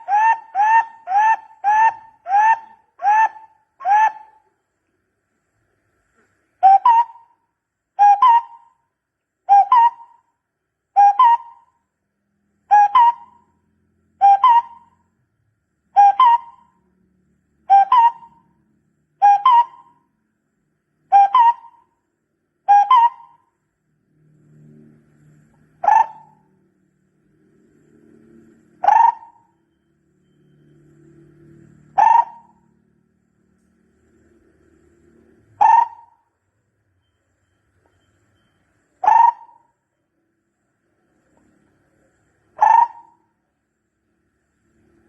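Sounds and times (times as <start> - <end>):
barbet calling: 0.0 - 4.5, 6.6 - 7.4, 8.0 - 8.8, 9.5 - 10.3, 10.9 - 11.8, 12.7 - 13.6, 14.2 - 15.0, 15.9 - 16.8, 17.7 - 18.5, 19.2 - 20.0, 21.1 - 21.9, 22.6 - 23.5, 25.8 - 26.5, 28.8 - 29.7, 31.9 - 32.7, 35.5 - 36.3, 39.0 - 39.8, 42.5 - 43.3.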